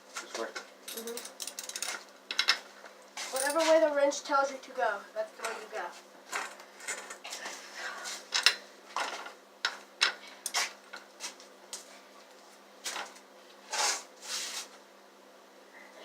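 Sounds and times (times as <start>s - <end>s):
scraping rasping noises: 13.6s - 14.7s.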